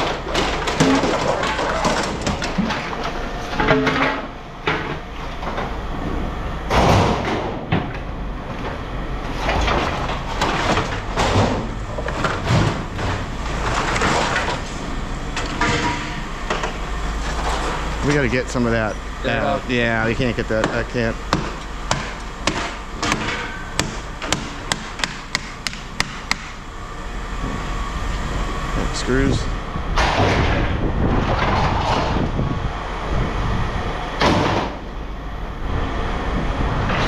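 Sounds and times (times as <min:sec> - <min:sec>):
metal scrap clanking: 0:00.0 - 0:05.5, 0:15.4 - 0:18.3.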